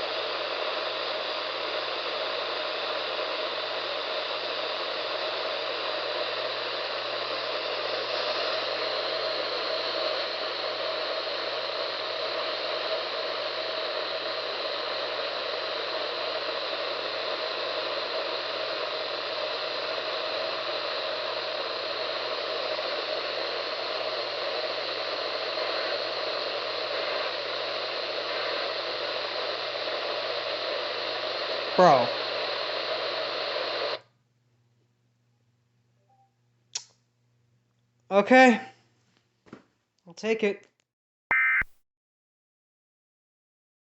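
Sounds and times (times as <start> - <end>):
radio static hiss: 0.0 - 34.0, 41.3 - 41.8.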